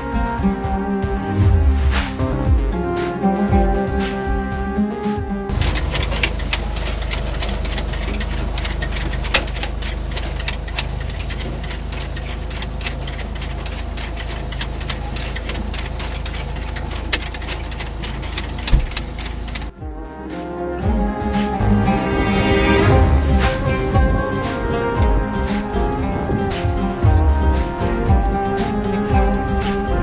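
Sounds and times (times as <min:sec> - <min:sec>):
tractor engine drone: 0:00.0 - 0:30.0
machine parts clattering: 0:05.5 - 0:19.8.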